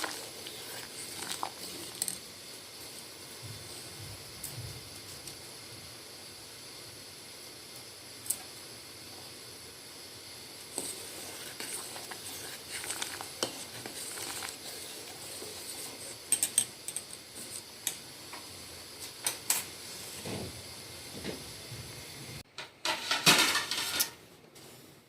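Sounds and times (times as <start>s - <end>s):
milk simmering with hiss: 0.0s - 25.0s.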